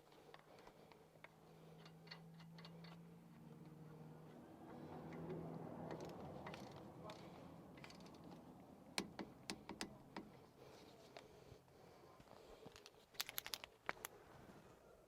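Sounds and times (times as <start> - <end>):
hand tools clicking and tapping: 0.0 - 3.8, 4.7 - 10.4.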